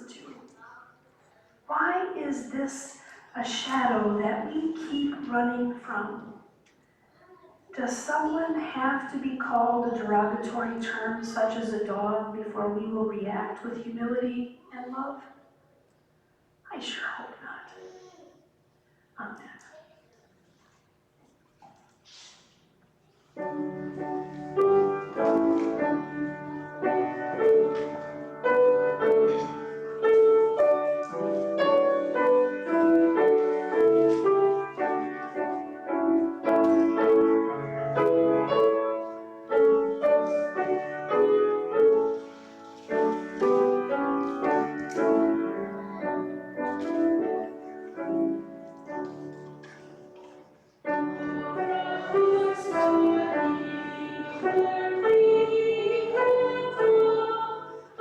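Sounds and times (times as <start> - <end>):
piano piece: 23.3 - 58.0.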